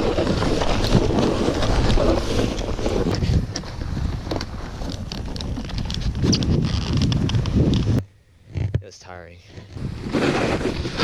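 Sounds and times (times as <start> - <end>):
snowboard sliding over snow: 0.0 - 4.8, 9.8 - 11.0
board scraping snow: 0.0 - 8.0, 9.6 - 11.0
wind buffeting microphone: 0.0 - 8.6, 9.6 - 11.0.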